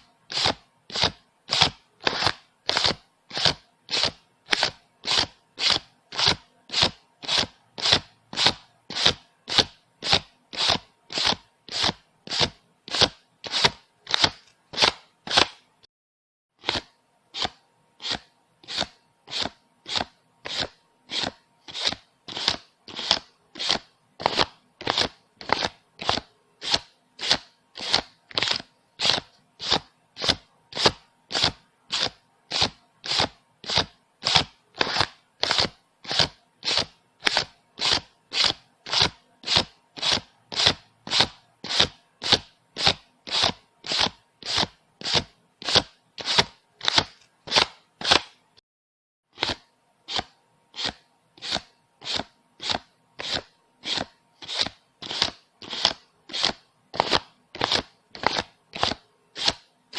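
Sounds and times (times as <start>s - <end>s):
banknotes being counted: 0.0s - 15.6s, 16.6s - 48.4s, 49.4s - 59.7s.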